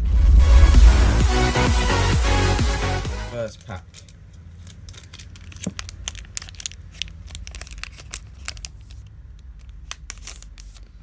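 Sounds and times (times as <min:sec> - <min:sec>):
foil wrapper crinkling and tearing: 0:03.6 - 0:11.0.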